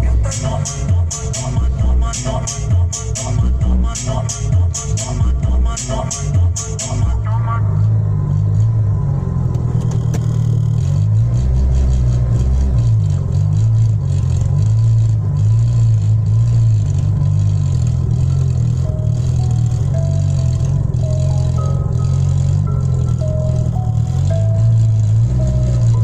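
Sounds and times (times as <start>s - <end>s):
bass-heavy music from car speakers: 0.0s - 8.7s, 15.0s - 26.0s.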